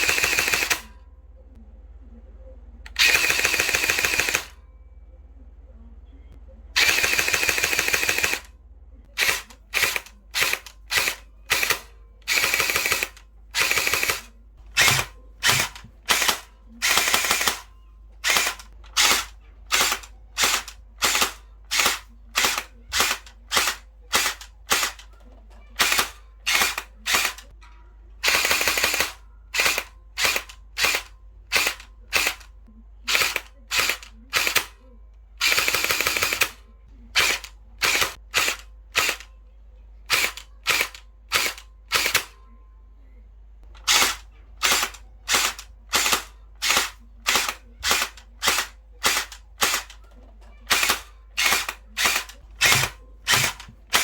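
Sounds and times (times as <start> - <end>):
airsoft rifle automatic bursts: 0.0 - 0.9, 2.9 - 4.6, 6.8 - 8.5, 9.2 - 25.1, 25.8 - 27.5, 28.2 - 32.5, 33.1 - 34.8, 35.4 - 36.6, 37.2 - 39.3, 40.1 - 42.3, 43.8 - 50.0, 50.7 - 54.0.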